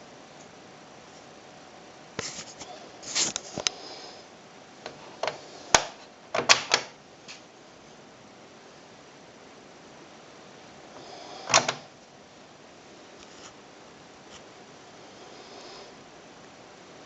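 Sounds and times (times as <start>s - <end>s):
typewriter clicking: 5.2s - 7.0s, 11.5s - 11.9s.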